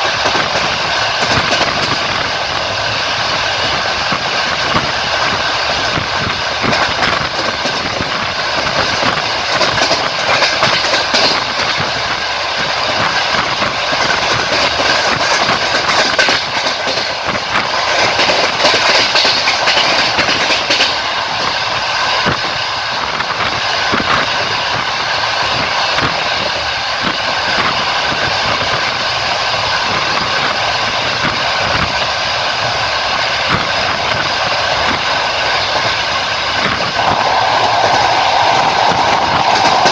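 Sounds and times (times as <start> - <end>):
train wheels rolling on rail: 0.0 - 39.9
wheels clacking over rail joints: 5.7 - 21.0.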